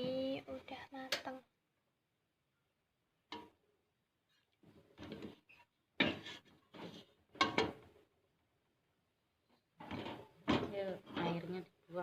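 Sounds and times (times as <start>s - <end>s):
pot and utensils clattering: 5.0s - 7.9s, 9.8s - 11.5s.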